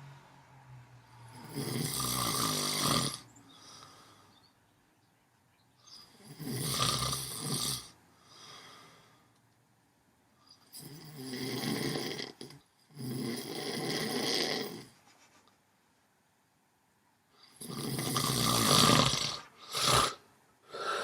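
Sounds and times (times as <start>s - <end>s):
person snoring: 1.2s - 4.2s, 6.0s - 9.0s, 10.6s - 15.0s, 17.4s - 21.0s
soft breath: 3.5s - 4.6s, 8.1s - 9.4s, 20.6s - 21.0s.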